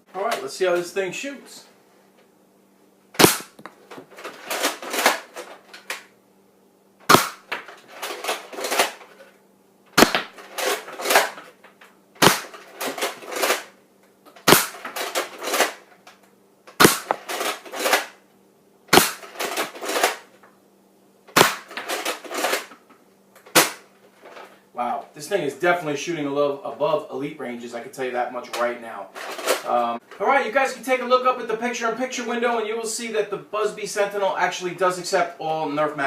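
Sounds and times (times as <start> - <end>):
dart blaster pop: 3.2 - 3.6, 7.1 - 7.6, 10.0 - 10.3, 12.2 - 12.5, 16.8 - 17.2.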